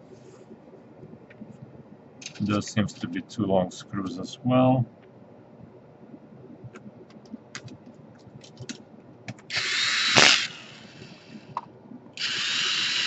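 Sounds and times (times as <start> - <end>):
electric screwdriver driving screws: 9.5 - 11.5, 12.2 - 13.0.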